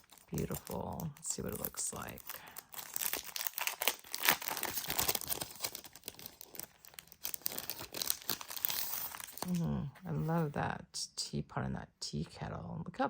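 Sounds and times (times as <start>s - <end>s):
paper crinkling and rustling: 0.0s - 10.4s.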